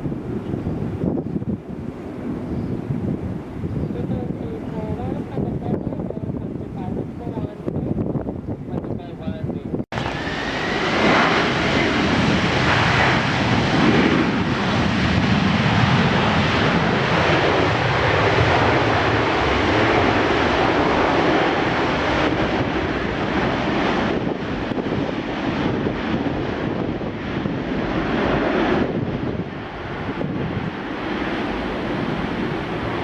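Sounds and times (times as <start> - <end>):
jet engines running loud: 9.9 - 33.0.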